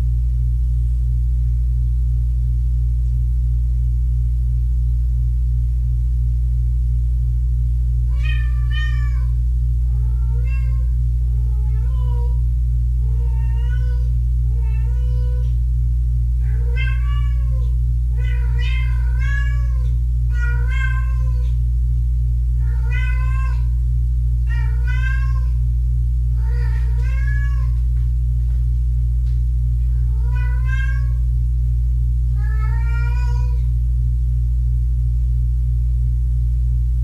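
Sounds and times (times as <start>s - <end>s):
low hum: 0.0s - 37.0s
kittens meowing: 16.4s - 21.6s, 22.6s - 23.7s, 24.5s - 25.6s, 26.4s - 27.8s, 29.9s - 31.2s, 32.4s - 33.6s.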